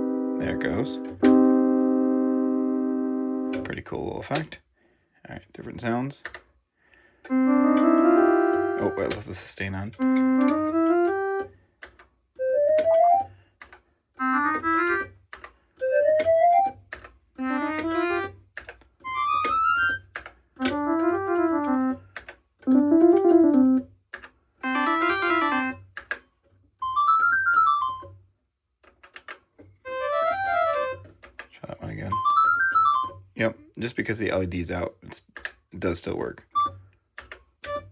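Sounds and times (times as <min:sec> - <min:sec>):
electronic keyboard note runs: 0:00.0 - 0:03.8, 0:07.3 - 0:09.2.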